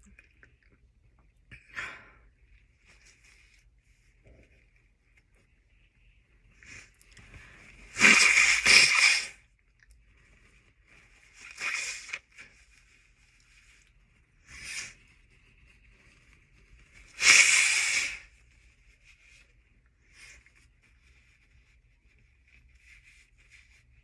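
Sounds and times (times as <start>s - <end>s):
stifled sneezes: 7.9s - 9.4s.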